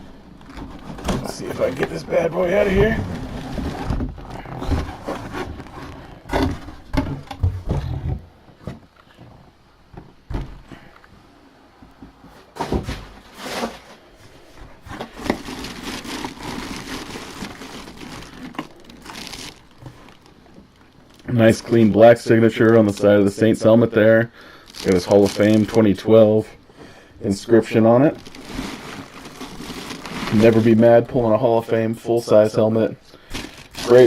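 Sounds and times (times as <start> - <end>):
packaging rustling and crinkling: 0.0 - 8.1, 12.6 - 26.3, 27.6 - 31.4, 33.2 - 34.0
knocks and thumps: 2.7 - 10.9.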